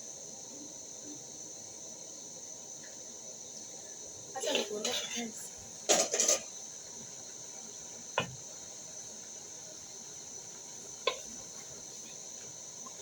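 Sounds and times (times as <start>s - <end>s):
cookware clattering against pot: 5.9s - 6.5s.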